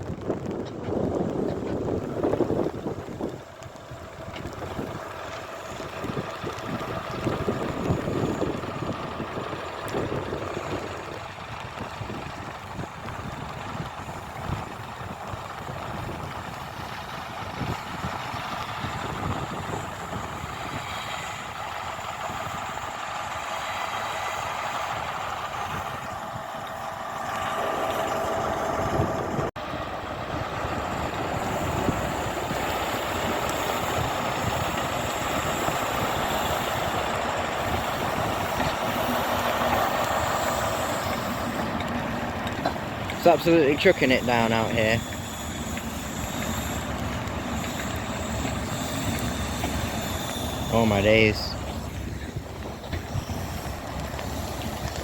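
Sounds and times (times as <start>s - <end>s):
diesel train engine running: 0.0s - 55.0s
steady rain hissing: 30.6s - 55.0s.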